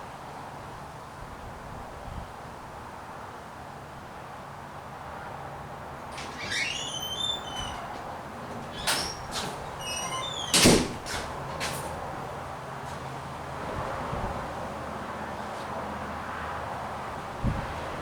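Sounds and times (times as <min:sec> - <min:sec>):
door hinges squeaking: 0:06.0 - 0:12.1
door banging shut: 0:06.1 - 0:12.1.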